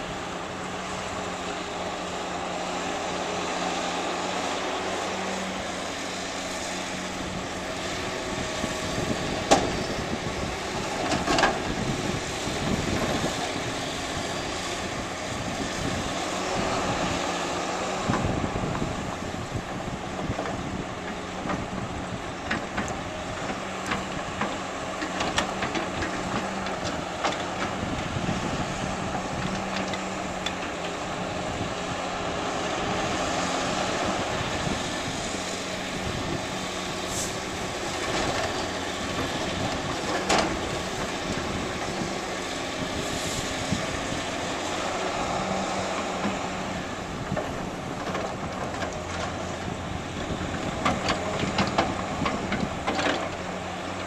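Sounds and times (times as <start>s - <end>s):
diesel construction machinery running: 0.0s - 54.0s.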